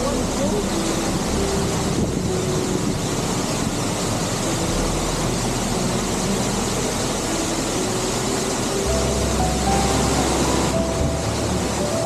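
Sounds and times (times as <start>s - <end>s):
waterfall roar: 0.0s - 12.0s.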